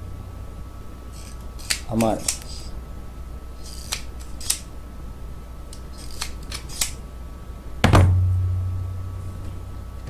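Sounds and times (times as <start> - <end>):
pliers snipping wire: 1.2 - 2.5, 3.6 - 4.7, 6.0 - 7.0.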